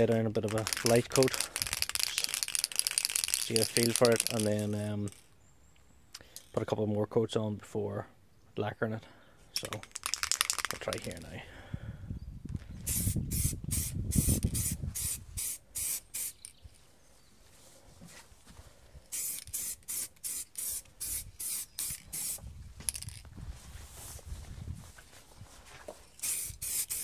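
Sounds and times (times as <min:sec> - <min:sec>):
spray paint can hissing: 0:00.5 - 0:04.7, 0:10.0 - 0:11.0, 0:12.9 - 0:16.6, 0:19.1 - 0:23.1, 0:26.2 - 0:27.0.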